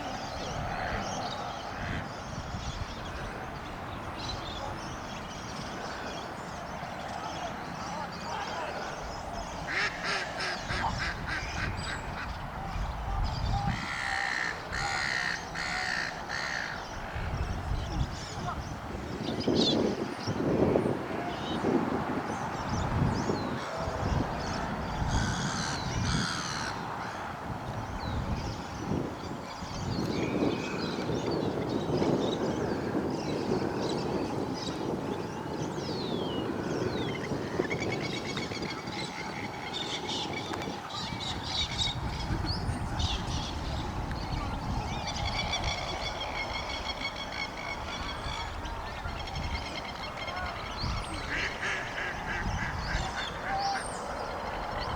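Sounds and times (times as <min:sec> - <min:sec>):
wind buffeting microphone: 0:00.0 - 0:54.9
ducks quacking: 0:09.6 - 0:12.4, 0:13.6 - 0:17.2, 0:45.5 - 0:53.9.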